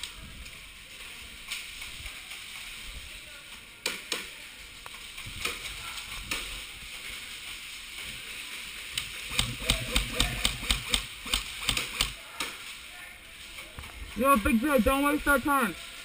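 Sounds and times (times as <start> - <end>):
scattered clicks: 9.0 - 12.2
airsoft gun shots: 9.3 - 12.2.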